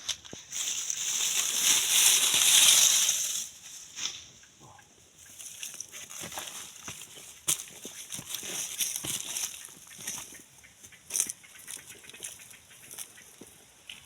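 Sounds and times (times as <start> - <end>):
dry leaves rustling: 0.0 - 4.5, 5.2 - 14.0.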